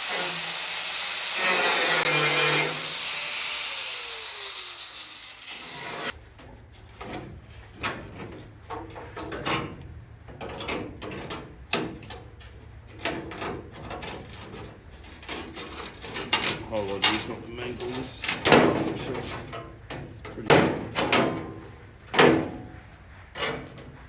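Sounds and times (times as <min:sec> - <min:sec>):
power tool spinning down: 0:00.0 - 0:06.1.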